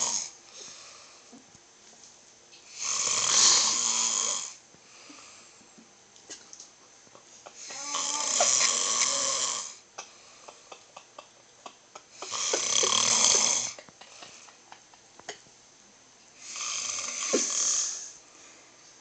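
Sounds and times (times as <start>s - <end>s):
man snoring: 0.0s - 0.4s, 2.7s - 4.6s, 7.6s - 9.8s, 12.2s - 13.8s, 16.4s - 18.2s.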